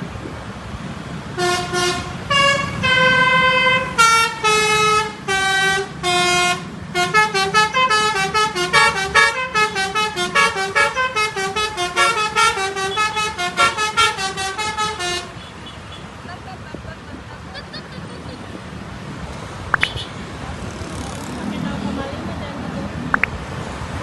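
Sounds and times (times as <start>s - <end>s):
musical bus horn playing a tune: 1.3s - 15.9s.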